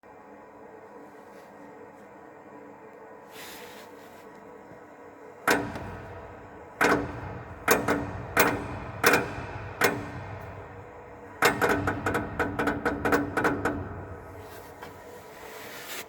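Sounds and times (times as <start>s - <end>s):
faint steady hum: 0.0s - 16.0s
heating pipes knocking: 5.4s - 15.1s.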